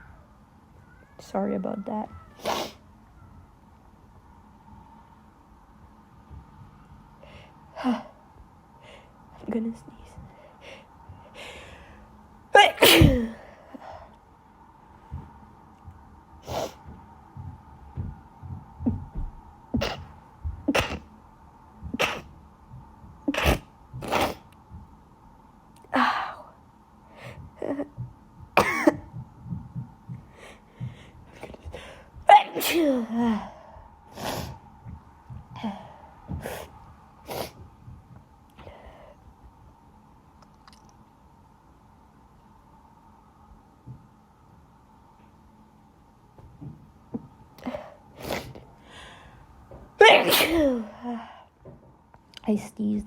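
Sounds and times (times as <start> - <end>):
catches of breath: 10.2 - 12.2, 30.2 - 32.2, 47.6 - 49.6
woman sneezing: 12.6 - 13.4, 20.7 - 21.0, 22.0 - 22.3, 23.3 - 24.4, 32.3 - 33.5, 50.0 - 51.2
soft low thumps: 15.0 - 25.3, 27.2 - 32.4, 34.6 - 37.0, 37.6 - 38.4.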